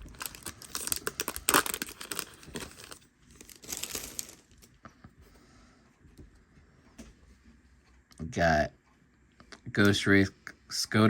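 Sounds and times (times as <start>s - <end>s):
foil wrapper crinkling and tearing: 0.0s - 4.7s.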